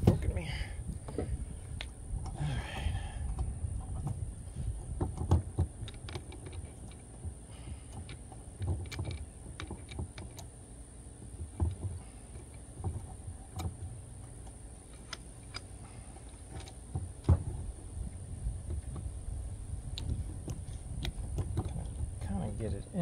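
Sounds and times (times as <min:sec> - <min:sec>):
steady low hum: 0:00.0 - 0:23.0
metal clicks and knocks: 0:03.2 - 0:10.5, 0:11.2 - 0:19.2, 0:19.8 - 0:22.6.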